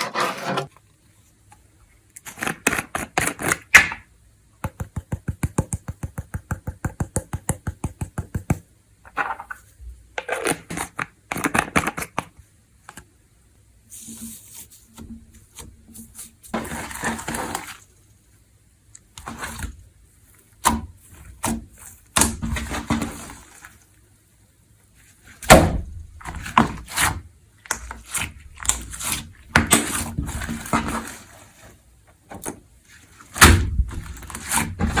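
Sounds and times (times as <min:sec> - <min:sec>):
slime squishing: 0:13.9 - 0:18.1, 0:25.0 - 0:31.8, 0:32.4 - 0:35.0.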